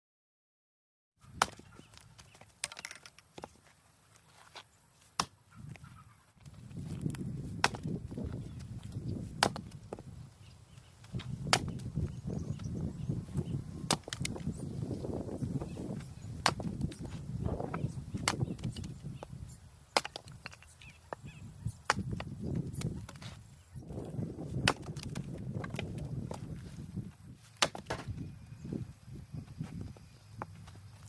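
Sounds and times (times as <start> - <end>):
firewood cracking and knocking: 6.8 - 10.0, 20.0 - 20.7, 24.5 - 26.6, 27.6 - 28.1.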